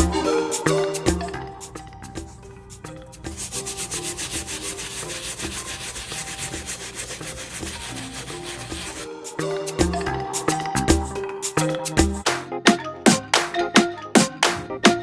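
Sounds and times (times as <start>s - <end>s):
brush scrubbing a sneaker: 3.3s - 9.1s.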